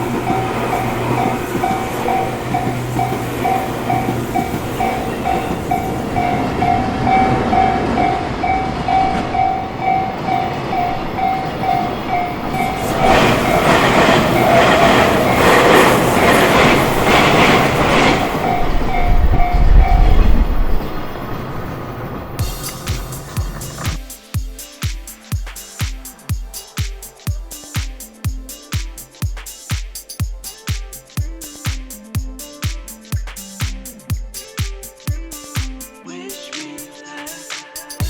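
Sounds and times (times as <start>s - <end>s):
level crossing bell ringing: 0.0s - 20.1s
train wheels clattering: 0.0s - 24.2s.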